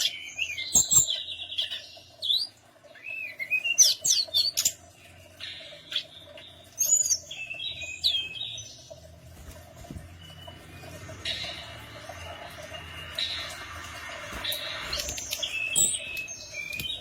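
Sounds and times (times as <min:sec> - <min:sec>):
songbird chirping and whistling: 0:00.0 - 0:04.8, 0:05.4 - 0:08.8, 0:14.4 - 0:17.0.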